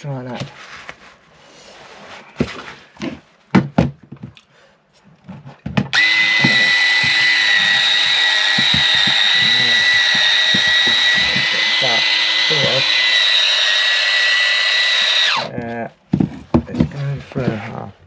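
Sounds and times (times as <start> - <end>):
electric shear motor whine: 5.9 - 15.5.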